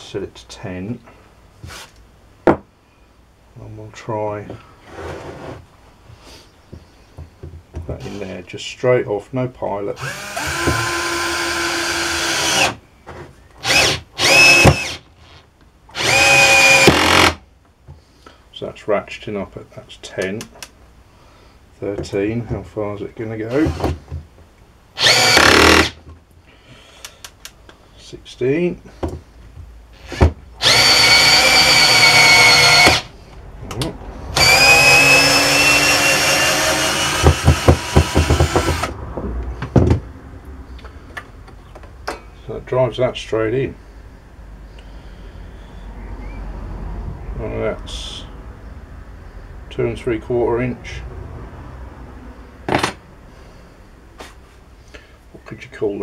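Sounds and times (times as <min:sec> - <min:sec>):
cordless drill driving a screw: 0:10.0 - 0:12.8, 0:13.6 - 0:17.4, 0:25.0 - 0:26.0, 0:30.6 - 0:33.1, 0:34.4 - 0:38.9
drill clutch ratcheting: 0:13.6 - 0:15.4, 0:16.0 - 0:17.4, 0:25.0 - 0:26.0, 0:30.6 - 0:33.1, 0:34.4 - 0:39.0.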